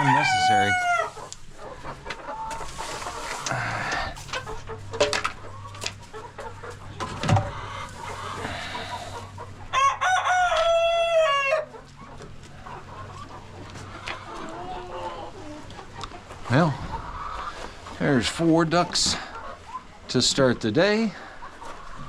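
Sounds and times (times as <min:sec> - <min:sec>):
rooster crowing: 0:00.0 - 0:01.1, 0:09.7 - 0:11.7
hens clucking: 0:00.0 - 0:22.0.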